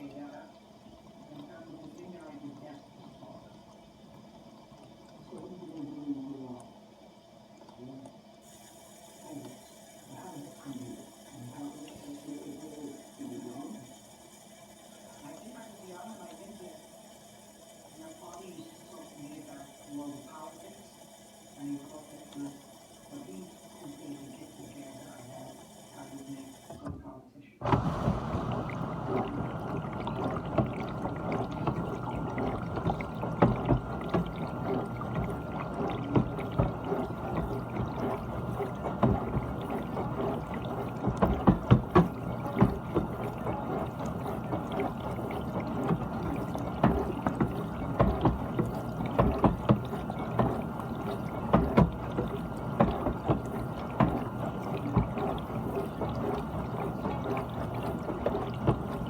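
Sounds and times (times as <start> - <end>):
pump hum: 0.0 - 59.0
water spraying inside dishwasher: 8.4 - 27.0, 27.6 - 59.0
knocks and splats: 27.7 - 59.0.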